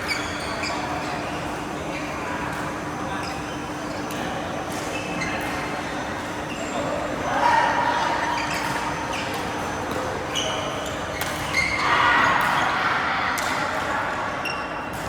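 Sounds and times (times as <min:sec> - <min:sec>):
shoes squeaking on court floor: 0:00.0 - 0:07.1, 0:08.0 - 0:11.9.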